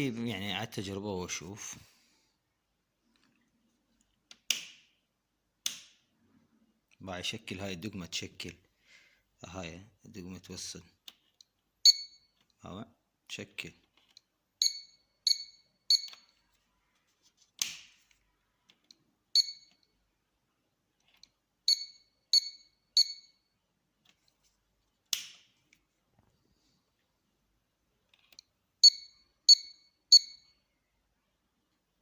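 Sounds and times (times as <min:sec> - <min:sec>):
short high beeps: 0:11.9 - 0:12.2, 0:14.6 - 0:16.2, 0:21.7 - 0:23.3, 0:28.8 - 0:30.5.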